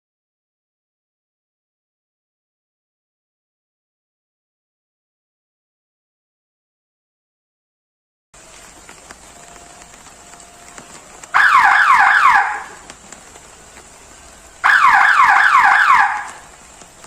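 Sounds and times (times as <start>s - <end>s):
electronic alarm siren chirps: 9.3s - 12.9s, 14.6s - 16.5s.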